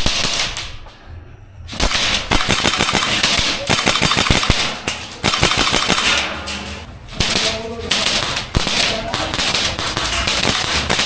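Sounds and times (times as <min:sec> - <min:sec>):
airsoft rifle firing full-auto: 0:01.8 - 0:06.3, 0:07.2 - 0:11.0.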